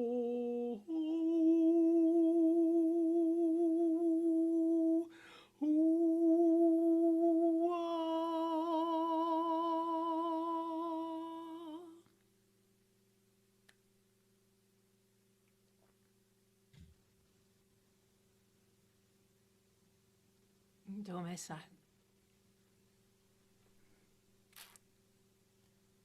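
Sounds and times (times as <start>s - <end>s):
quick breath: 5.1s - 5.6s.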